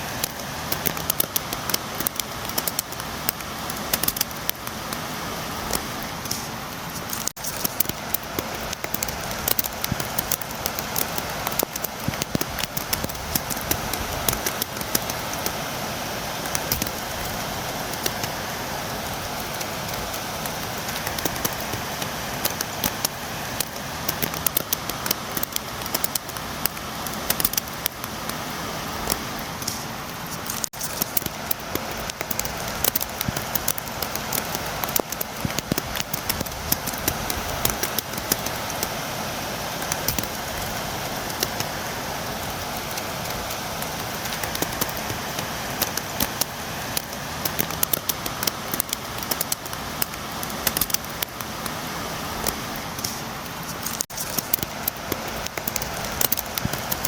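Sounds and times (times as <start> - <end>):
rain hiss: 0.0 - 57.0
raindrops tapping on window: 7.1 - 15.6, 30.5 - 39.0.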